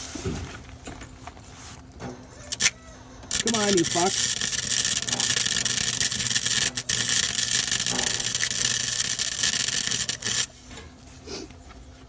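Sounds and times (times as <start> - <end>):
low electrical hum: 0.0 - 12.0
welding arc crackling: 2.5 - 10.6.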